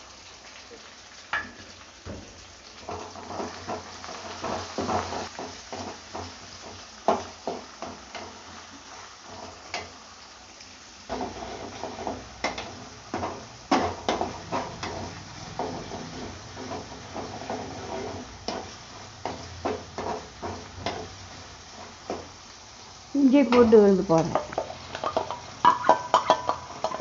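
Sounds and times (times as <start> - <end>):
low sizzle: 0.0 - 27.0
spoon scraping against pan: 11.1 - 22.4, 24.3 - 27.0.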